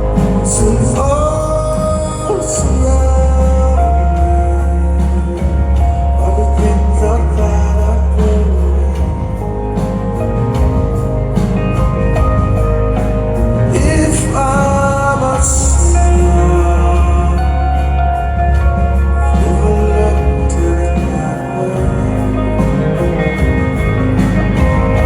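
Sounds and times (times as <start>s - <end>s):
man singing: 0.0s - 10.8s, 13.0s - 25.0s
electric guitar notes: 0.0s - 25.0s
heavy bass: 0.0s - 25.0s
rock band playing live: 0.0s - 25.0s
drum beat: 5.2s - 17.5s.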